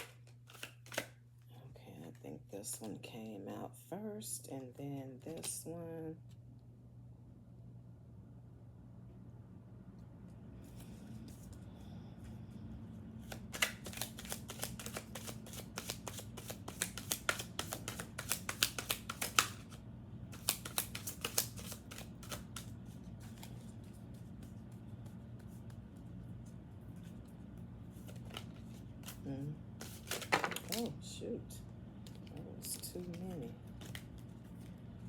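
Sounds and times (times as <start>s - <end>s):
cards being shuffled: 0.0s - 1.2s, 13.2s - 27.3s, 27.9s - 29.2s, 29.8s - 31.0s, 32.0s - 34.8s
low steady hum: 0.0s - 35.0s.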